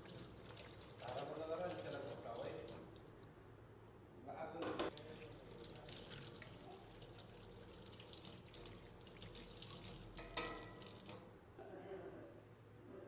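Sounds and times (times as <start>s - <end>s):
tap water running into sink: 0.0s - 3.0s, 4.7s - 11.3s.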